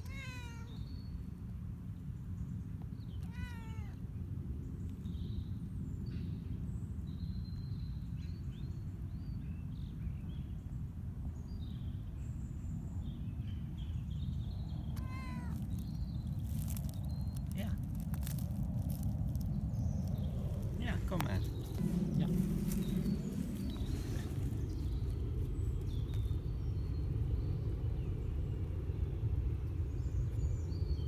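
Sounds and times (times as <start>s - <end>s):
cat meowing: 0.0s - 0.8s, 3.2s - 4.0s, 14.9s - 15.9s
small birds chirping: 0.0s - 10.8s, 11.4s - 29.0s.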